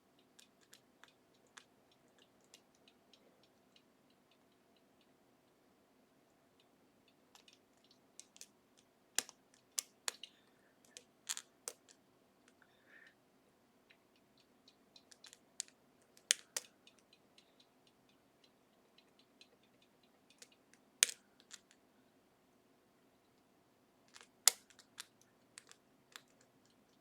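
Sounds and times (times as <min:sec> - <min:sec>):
lock pick clicking in a lock: 0:20.4 - 0:21.7, 0:24.1 - 0:26.4.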